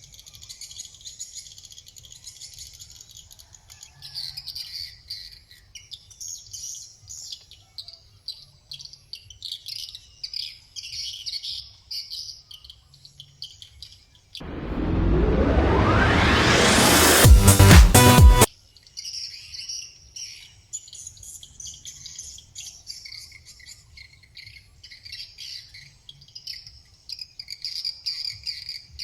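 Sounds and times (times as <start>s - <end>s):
loud rising sweep: 14.4s - 18.5s.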